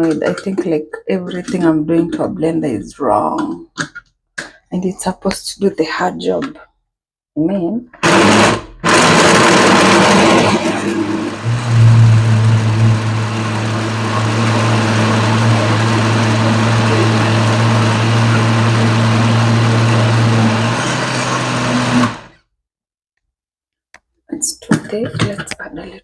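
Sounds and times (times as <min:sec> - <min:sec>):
blender motor running: 0:08.0 - 0:22.4.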